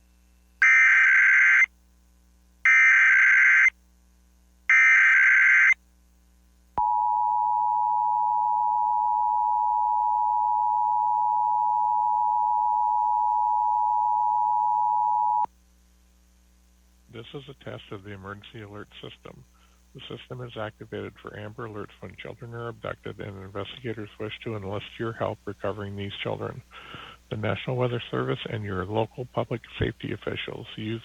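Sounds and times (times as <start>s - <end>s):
screeching digital data bursts: 0.6s - 1.7s, 2.7s - 3.7s, 4.7s - 5.8s
steady two-tone attention signal: 6.8s - 15.5s.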